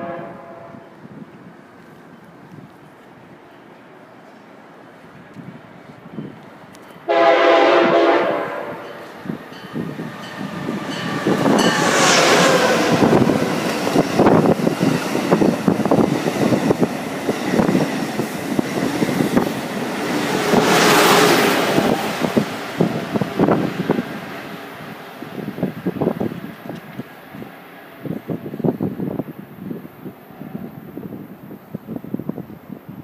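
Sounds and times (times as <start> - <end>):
train air horn blast: 0.0 - 0.9, 7.1 - 9.0
train passing with rail clatter: 0.0 - 33.0.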